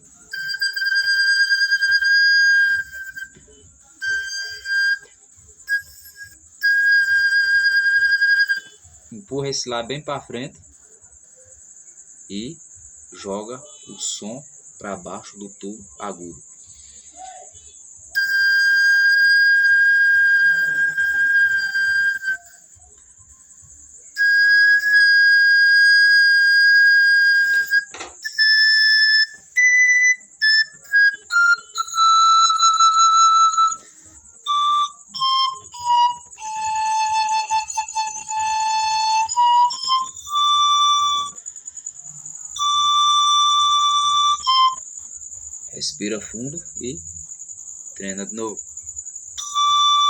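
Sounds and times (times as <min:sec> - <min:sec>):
pan flute playing high notes: 0:00.0 - 0:08.8, 0:18.1 - 0:22.8, 0:24.2 - 0:41.4, 0:42.4 - 0:44.9, 0:49.4 - 0:50.0.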